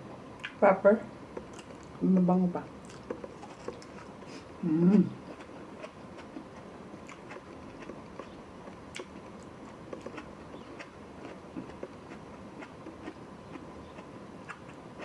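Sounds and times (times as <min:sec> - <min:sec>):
steady low hiss: 0:00.0 - 0:15.0
person chewing food: 0:01.3 - 0:02.0, 0:02.8 - 0:15.0.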